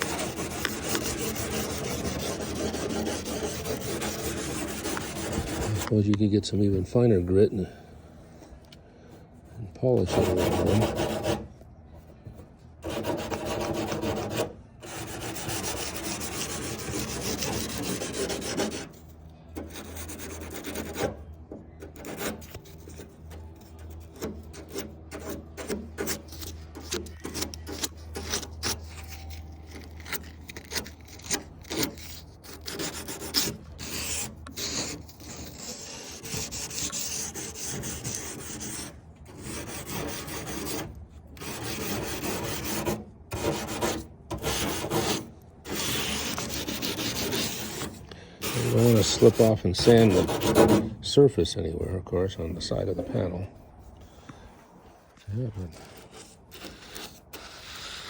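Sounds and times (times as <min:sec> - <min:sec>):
emery cloth rasping on metal: 0:00.0 - 0:05.9, 0:09.8 - 0:11.5, 0:12.8 - 0:19.0, 0:21.8 - 0:50.9.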